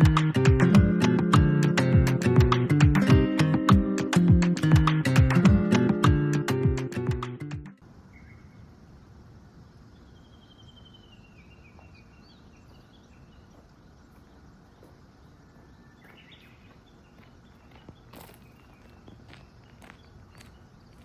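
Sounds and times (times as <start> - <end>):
low background hiss: 7.8 - 18.9
small birds calling: 9.7 - 21.0.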